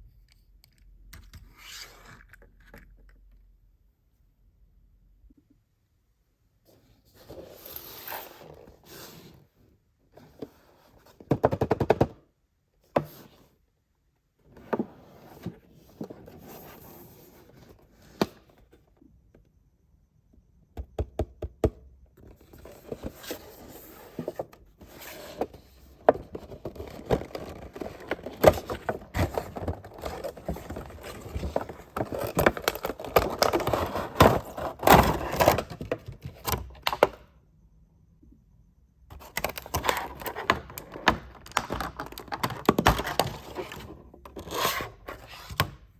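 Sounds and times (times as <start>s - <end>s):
plastic toys scraping and rustling: 22.4s - 35.9s, 39.2s - 45.6s.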